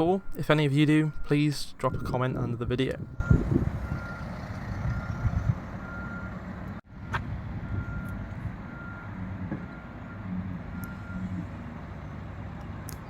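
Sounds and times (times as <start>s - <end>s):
reversing alarm beeping: 0.0s - 6.4s, 7.6s - 11.5s.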